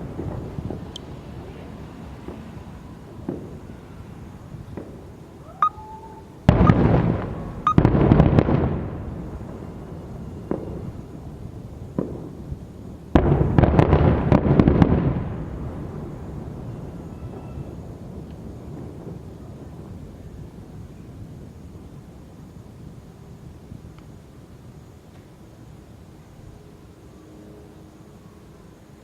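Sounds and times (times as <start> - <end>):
firework whistle: 0.0 - 11.2, 16.3 - 18.4
fireworks booming and crackling: 0.0 - 25.9
single firework pops: 3.2 - 3.7, 4.6 - 5.1, 10.4 - 10.8, 11.9 - 12.4, 13.1 - 15.3.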